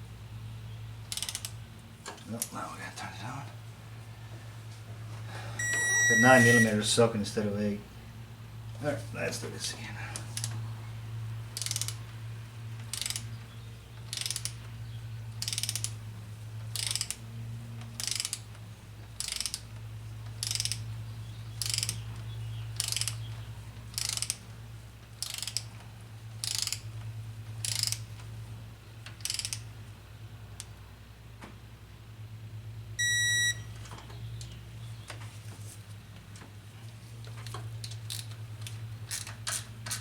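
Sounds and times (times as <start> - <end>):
ratchet wrench clicking: 1.1 - 1.6, 11.5 - 12.0, 12.8 - 13.3, 14.1 - 14.6, 15.3 - 16.0, 16.7 - 17.2, 17.8 - 18.5, 19.2 - 20.8, 21.6 - 22.0, 22.8 - 23.2, 23.9 - 24.5, 25.2 - 25.8, 26.4 - 27.0, 27.6 - 28.2, 29.0 - 29.7, 37.8 - 40.0.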